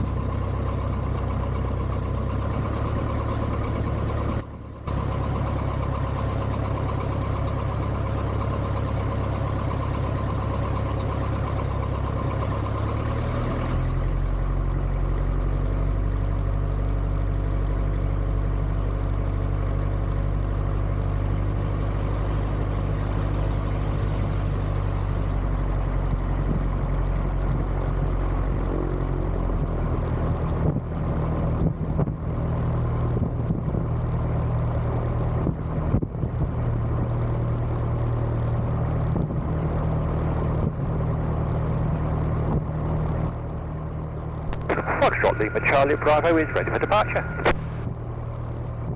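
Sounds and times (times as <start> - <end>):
aircraft engine running: 0.0 - 15.5, 21.0 - 25.6, 41.6 - 48.9.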